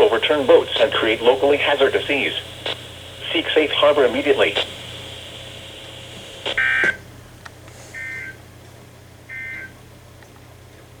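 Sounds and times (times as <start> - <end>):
low hum: 0.0 - 6.6
receiver hiss: 0.0 - 8.4.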